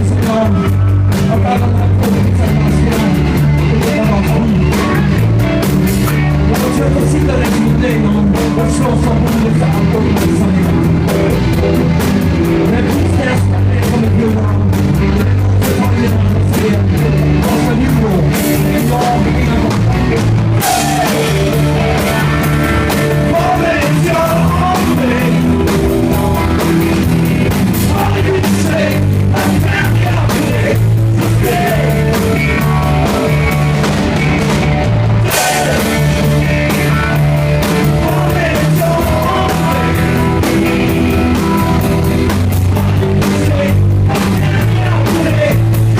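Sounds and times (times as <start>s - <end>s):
drum kit beat: 0.0s - 45.9s
electric guitar: 0.0s - 45.9s
person singing: 6.0s - 11.2s, 12.6s - 26.8s, 27.8s - 34.3s, 35.1s - 41.8s, 42.5s - 45.9s.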